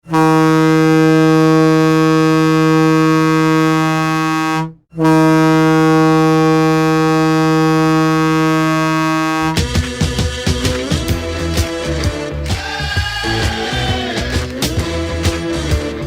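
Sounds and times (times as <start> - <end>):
goal horn blasts: 0.0 - 9.6.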